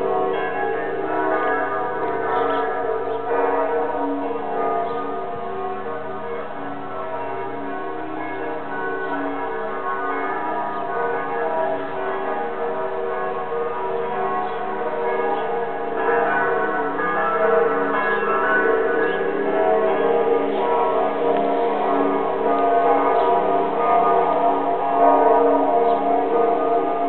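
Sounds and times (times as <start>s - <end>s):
church bells ringing: 0.0s - 27.0s.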